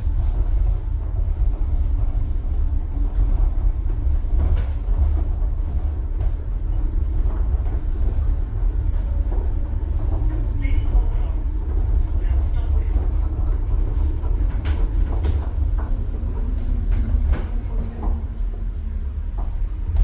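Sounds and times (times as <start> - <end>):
people-mover car rumbling: 0.0 - 20.0.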